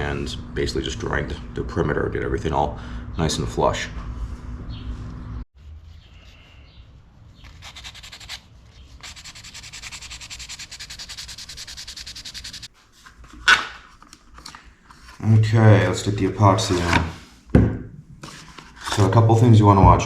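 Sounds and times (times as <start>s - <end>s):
sandpaper rubbing on steel blade: 7.4s - 12.7s.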